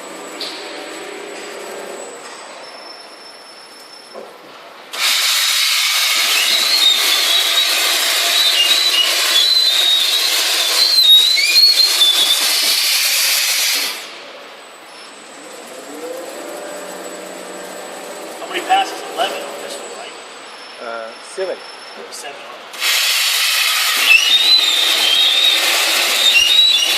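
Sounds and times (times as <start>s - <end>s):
cutting tool screeching on metal: 5.0s - 14.0s, 17.0s - 22.2s, 22.8s - 26.9s.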